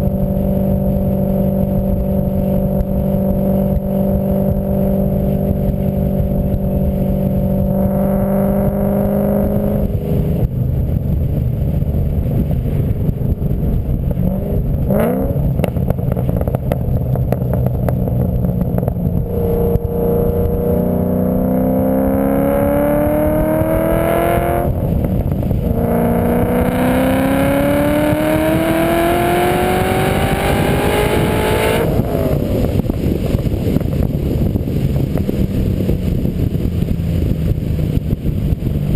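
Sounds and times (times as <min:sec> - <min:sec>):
car accelerating: 0:00.0 - 0:38.9
road noise: 0:00.0 - 0:38.9
rising gear whine: 0:18.8 - 0:24.8, 0:25.6 - 0:32.8.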